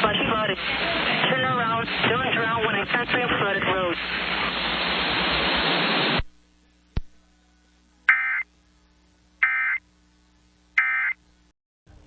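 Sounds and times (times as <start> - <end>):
hissy broadcast audio: 0.0 - 12.0
digital data tone bursts: 8.1 - 8.5, 9.4 - 9.8, 10.8 - 11.2.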